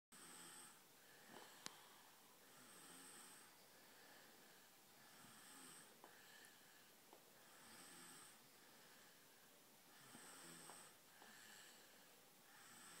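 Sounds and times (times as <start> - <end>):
person snoring faintly: 0.2 - 13.0
soft breathing: 0.2 - 13.0.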